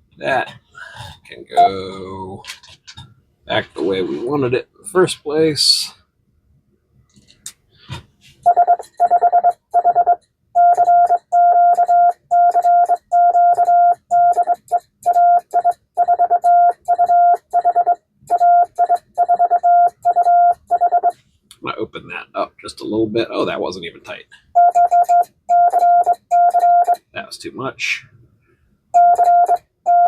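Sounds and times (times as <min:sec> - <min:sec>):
morse code sidetone: 0:08.5 - 0:21.1, 0:24.6 - 0:27.0, 0:29.0 - 0:30.0.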